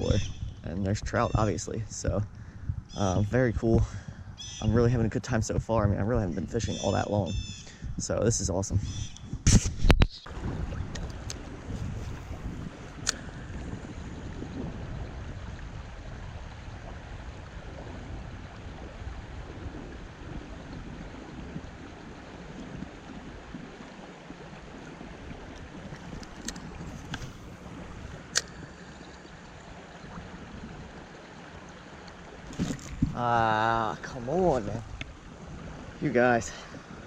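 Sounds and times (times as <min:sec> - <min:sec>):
wind buffeting microphone: 0:00.0 - 0:37.0
river water flowing: 0:10.3 - 0:37.0.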